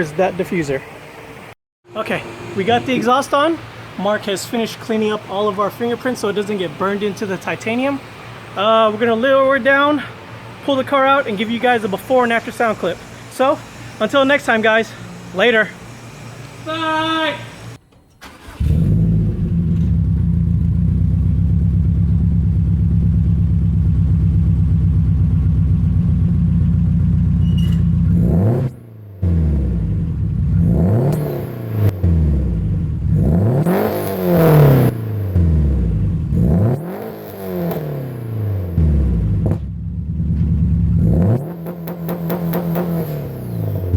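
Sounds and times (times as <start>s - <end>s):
car engine idling and revving: 0.3s - 8.6s, 18.2s - 43.9s.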